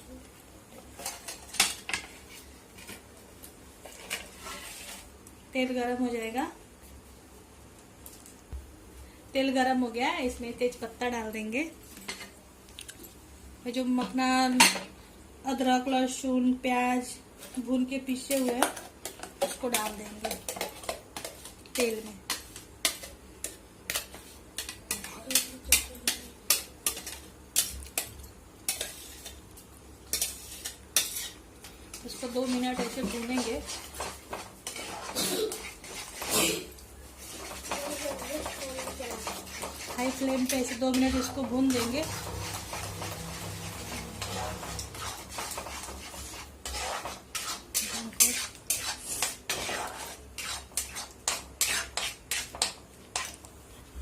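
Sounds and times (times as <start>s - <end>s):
paste frying in oil: 0.0s - 7.1s, 17.1s - 53.6s
spoon scraping a pan: 1.0s - 3.0s, 3.8s - 5.1s, 18.3s - 53.4s.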